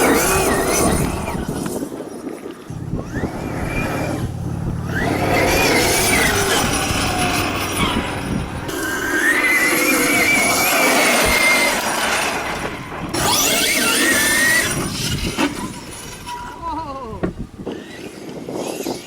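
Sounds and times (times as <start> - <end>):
electric motor whining: 0.0 - 18.6
rushing noise: 2.7 - 14.9.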